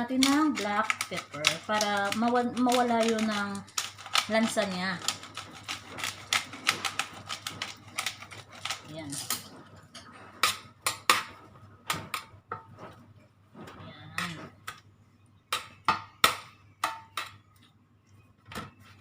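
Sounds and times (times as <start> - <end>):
kitchen utensils clicking and tapping: 0.0 - 9.5.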